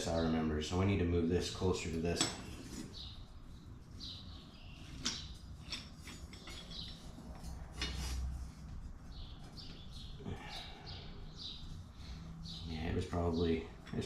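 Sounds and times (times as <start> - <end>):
metal clicks knocks and scrapes: 4.8 - 8.4.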